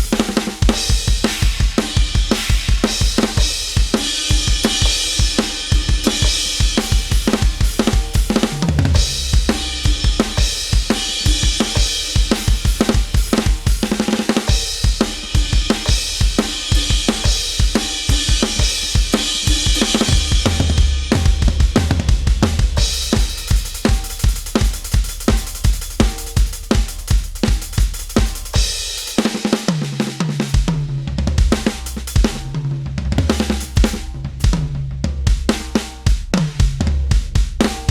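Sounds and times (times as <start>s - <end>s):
bass drum strokes: 0.0s - 25.0s, 30.6s - 37.9s
crashing cymbals: 0.0s - 27.1s.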